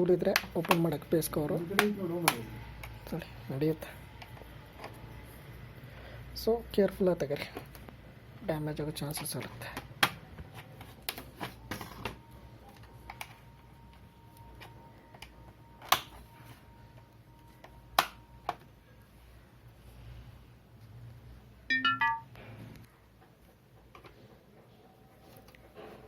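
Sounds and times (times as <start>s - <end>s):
electronic chime falling notes: 21.7s - 22.3s.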